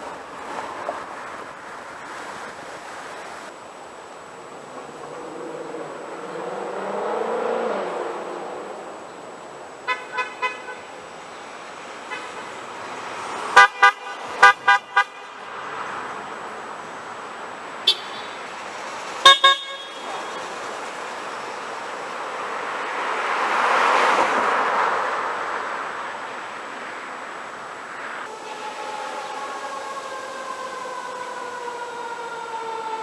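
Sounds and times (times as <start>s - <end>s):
street traffic: 0.0s - 33.0s
car horns honking: 9.8s - 11.1s, 12.0s - 16.0s, 17.8s - 21.2s.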